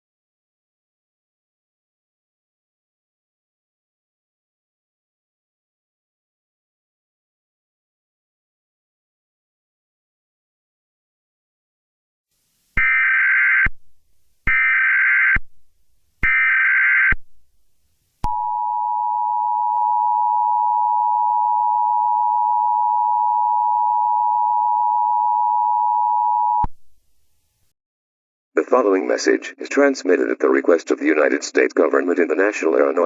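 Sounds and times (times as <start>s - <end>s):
dual-tone alarm: 12.8s - 13.8s, 14.4s - 15.5s, 16.2s - 17.2s, 18.2s - 26.7s.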